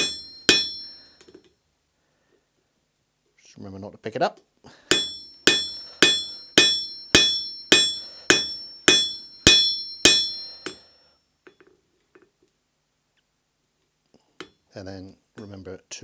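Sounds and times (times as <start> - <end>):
hammer blows on hot steel: 0.0 - 1.1, 4.9 - 10.8.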